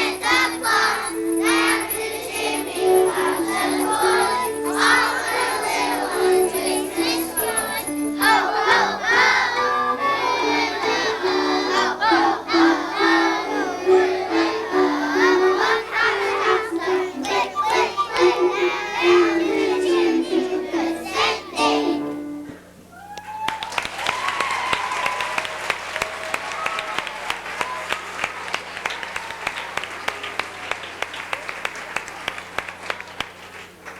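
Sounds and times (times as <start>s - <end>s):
children singing: 0.0s - 22.4s
musical accompaniment: 0.0s - 22.6s
audience applauding: 23.1s - 33.9s.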